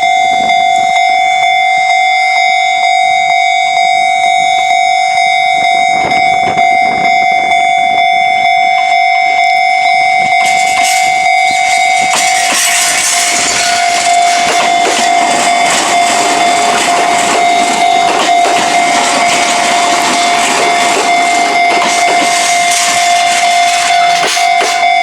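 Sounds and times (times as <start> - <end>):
level crossing warning bell: 0.0 - 25.0
train wheels clattering over rails: 10.4 - 25.0.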